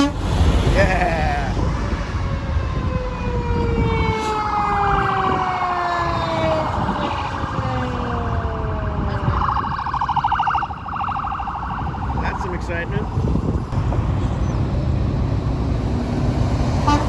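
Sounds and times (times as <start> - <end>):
truck air horn: 0.0 - 0.3
truck rumble: 0.0 - 17.0.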